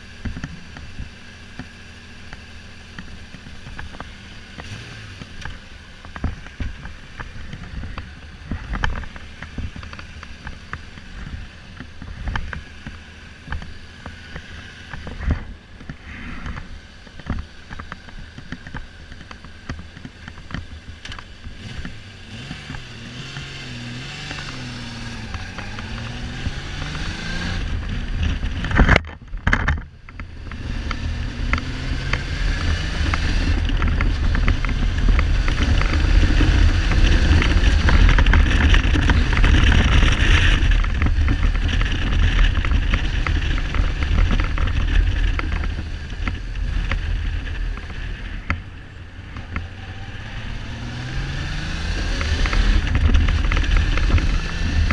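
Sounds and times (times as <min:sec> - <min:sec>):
wind noise on microphone: 0:24.1 - 0:54.9
motorcycle engine misfiring: 0:27.6 - 0:32.2.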